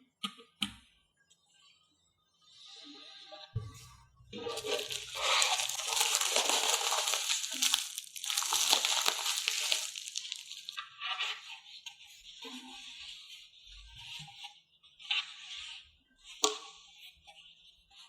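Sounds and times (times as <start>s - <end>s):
packaging crinkling: 4.4s - 10.8s.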